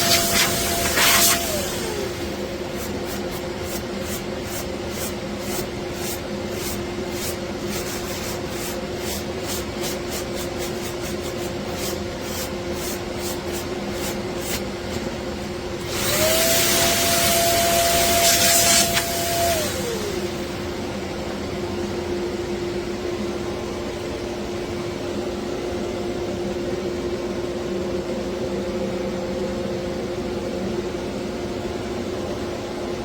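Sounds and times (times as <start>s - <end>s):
orbital sander running: 0.0s - 9.4s, 15.8s - 20.8s.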